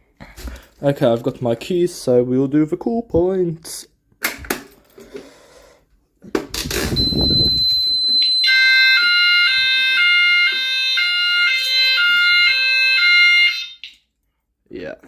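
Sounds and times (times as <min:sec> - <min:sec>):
alarm system click: 0:06.9 - 0:09.2
alternating two-tone alarm: 0:06.9 - 0:14.0
steady high alarm tone: 0:06.9 - 0:14.0.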